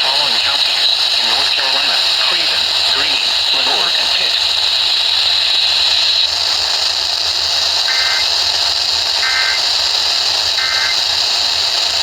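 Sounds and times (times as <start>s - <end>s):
radio static hiss: 0.0s - 12.0s
warbling digital data tones: 7.9s - 8.4s, 9.2s - 9.7s, 10.6s - 11.1s.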